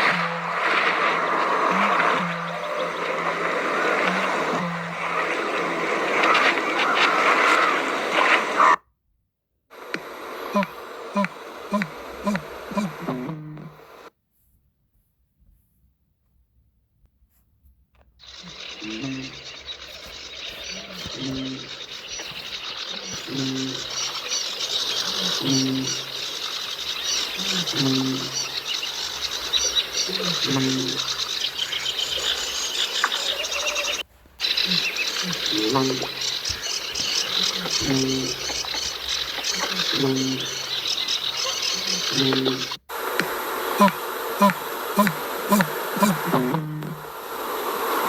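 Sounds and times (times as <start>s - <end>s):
insects chirping: 0.0s - 8.7s, 9.7s - 14.1s, 18.2s - 48.0s
birds chirping: 0.0s - 8.8s, 9.7s - 14.1s, 18.2s - 47.2s
dinosaur calls: 0.0s - 8.8s, 10.4s - 14.1s, 18.2s - 47.2s
hiss: 9.7s - 14.1s, 18.2s - 48.0s.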